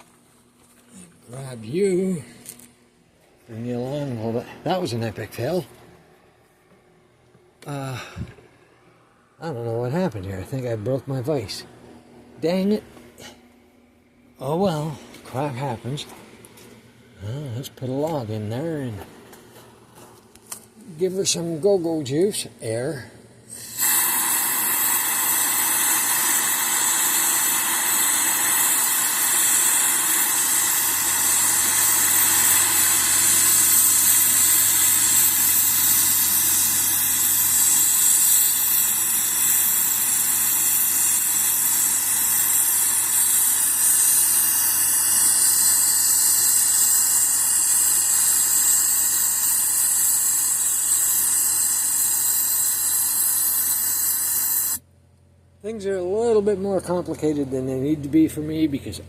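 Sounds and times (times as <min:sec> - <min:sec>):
air blower rushing hiss: 0:23.4 - 0:54.8.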